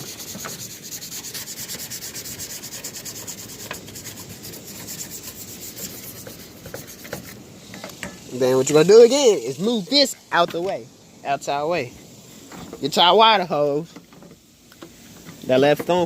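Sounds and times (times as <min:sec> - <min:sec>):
toothbrush scrubbing: 0:00.0 - 0:07.4.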